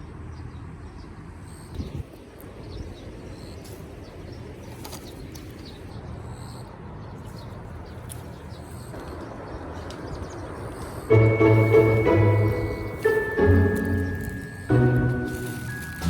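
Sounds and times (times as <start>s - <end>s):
bird chirps: 2.6s - 16.0s
music with bell-like chimes: 11.1s - 16.0s.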